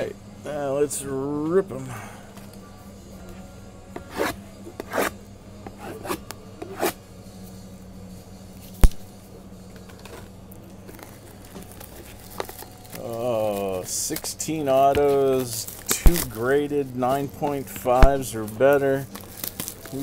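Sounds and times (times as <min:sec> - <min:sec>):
tearing wrap and cardboard: 0:10.9 - 0:13.9, 0:19.0 - 0:20.0.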